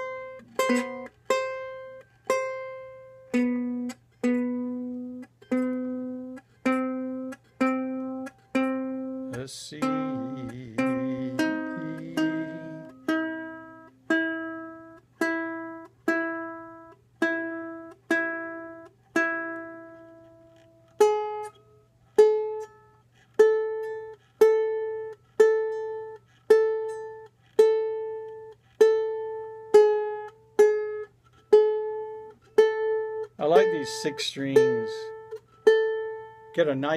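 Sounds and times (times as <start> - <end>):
ukulele string plucked: 0.0 - 21.6.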